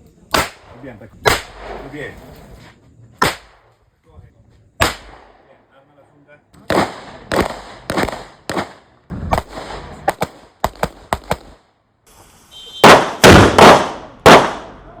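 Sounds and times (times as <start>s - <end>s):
gunshots: 0.3s - 2.2s, 3.2s - 3.7s, 4.8s - 5.5s, 6.6s - 11.6s, 12.8s - 14.9s.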